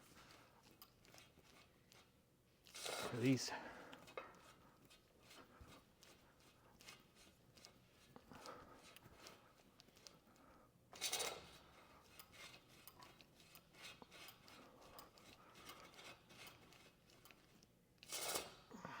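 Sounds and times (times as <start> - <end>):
hands rubbing and scraping band: 4.2 - 10.3.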